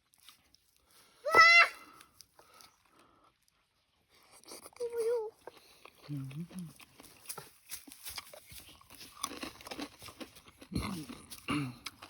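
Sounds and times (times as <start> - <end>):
chewing crisp food: 0.0 - 1.2, 1.8 - 12.0.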